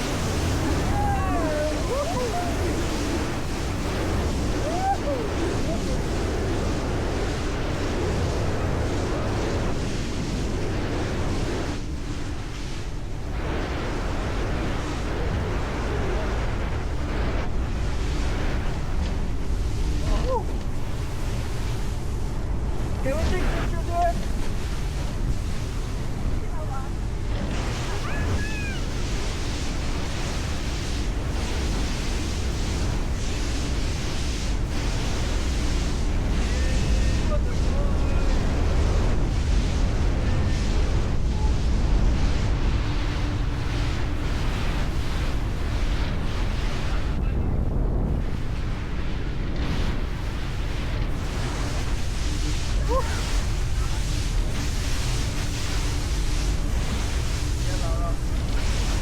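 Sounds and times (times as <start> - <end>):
speedboat engine: 0.0 - 10.1, 18.4 - 33.6
water rushing along hull: 0.0 - 59.0
wind buffeting microphone: 0.0 - 59.0.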